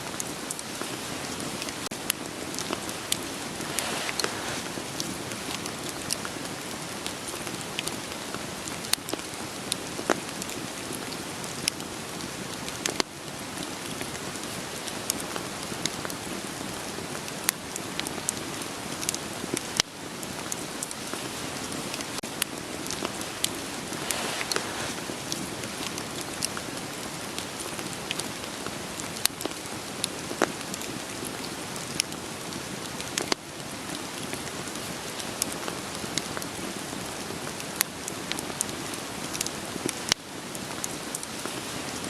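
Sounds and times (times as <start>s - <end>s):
rain patter: 0.0s - 42.0s
wood fire crackling and popping: 0.1s - 36.5s.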